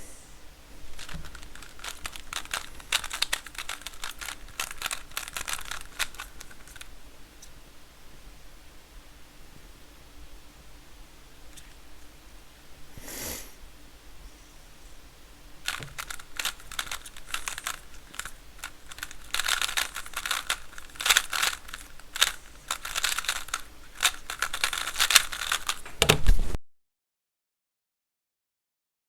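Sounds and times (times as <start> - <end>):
puzzle cube plastic clicking: 0.9 - 6.9, 15.6 - 26.1.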